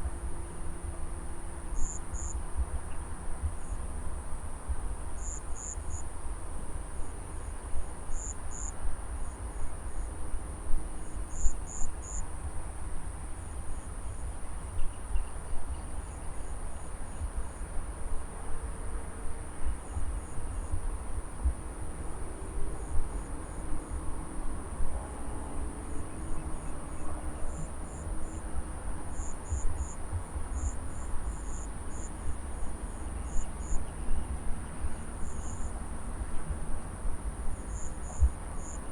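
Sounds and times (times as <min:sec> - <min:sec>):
insect chirps: 0:01.8 - 0:02.4, 0:05.2 - 0:06.1, 0:08.1 - 0:08.7, 0:11.0 - 0:12.2, 0:29.1 - 0:30.0, 0:30.6 - 0:35.7, 0:37.6 - 0:38.9.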